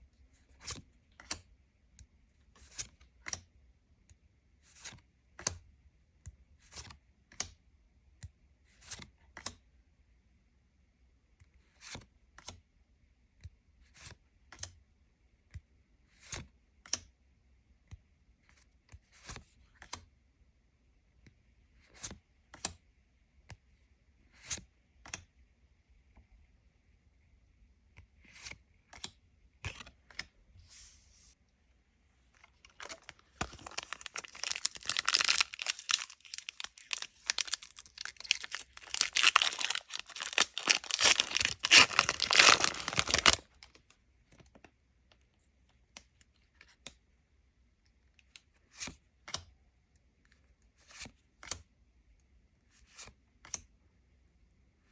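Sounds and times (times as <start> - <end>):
cards clicking and tapping: 32.4 - 43.7
wrapper tearing and crinkling: 32.7 - 43.6.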